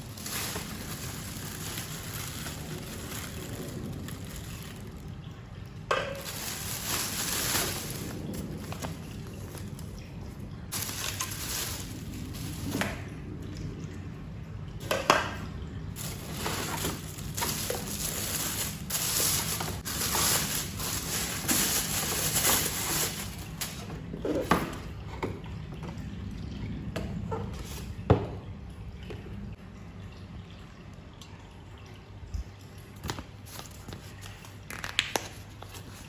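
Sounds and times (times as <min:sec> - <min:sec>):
tap water running: 0:00.0 - 0:36.0.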